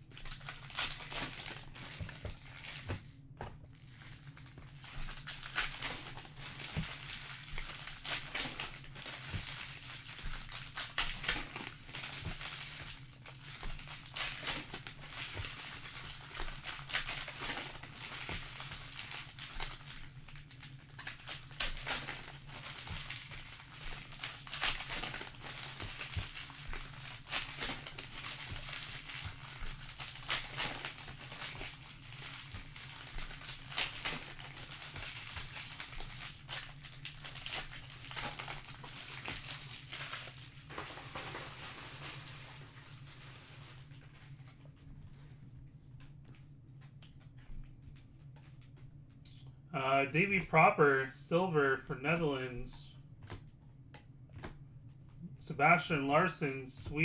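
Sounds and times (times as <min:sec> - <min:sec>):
foil wrappers crinkling and tearing: 0:00.0 - 0:45.4.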